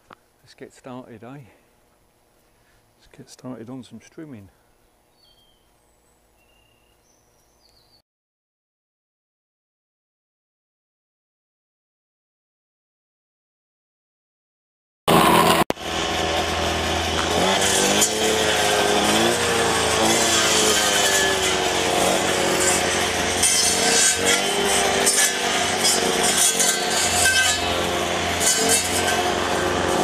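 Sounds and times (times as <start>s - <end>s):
strimmer engine revving: 15.1s - 30.0s.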